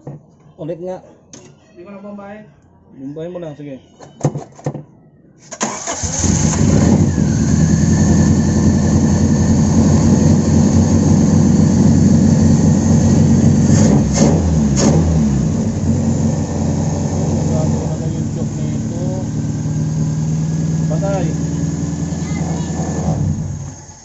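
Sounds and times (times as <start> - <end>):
car engine cranking and running: 5.5 - 24.0.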